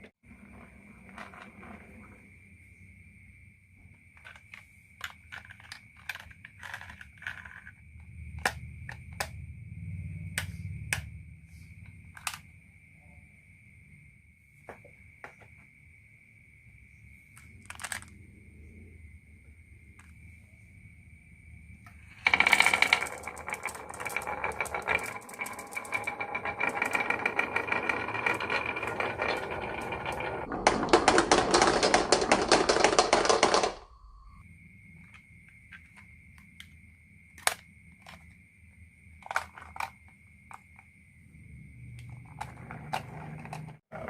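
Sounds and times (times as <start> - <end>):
marbles clattering down a marble run: 5.0 - 7.8, 22.0 - 34.2.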